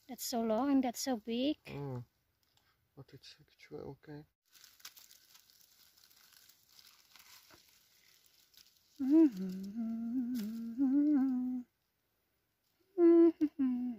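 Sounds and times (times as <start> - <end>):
rustling and handling noise: 4.5 - 11.3
person humming a slow tune: 9.0 - 11.7, 13.0 - 13.9.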